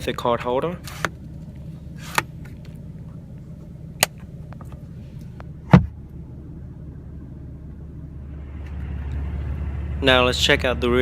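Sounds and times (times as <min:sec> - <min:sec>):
car engine idling: 0:00.0 - 0:11.0
thump: 0:05.7 - 0:06.0.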